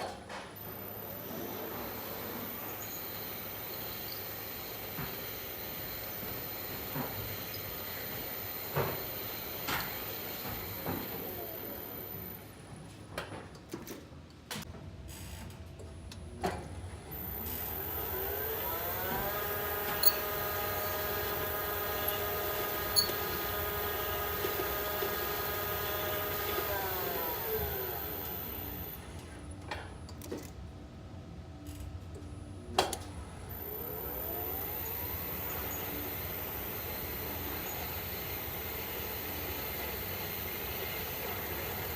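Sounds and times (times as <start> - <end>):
lift motor whine: 0.5 - 12.8, 15.9 - 30.2, 31.6 - 41.9
lift brake noise: 17.1 - 28.4.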